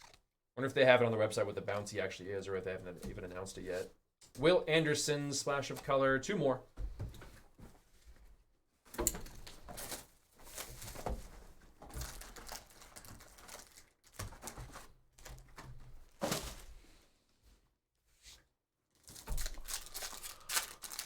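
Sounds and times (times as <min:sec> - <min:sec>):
cards and wrappers crinkling: 0:11.9 - 0:14.8, 0:19.0 - 0:21.0.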